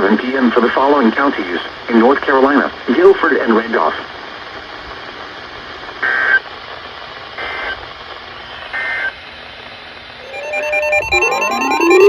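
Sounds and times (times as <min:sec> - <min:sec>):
radio hiss: 0:00.0 - 0:09.1
buzzy two-tone digital squawks: 0:10.2 - 0:12.0.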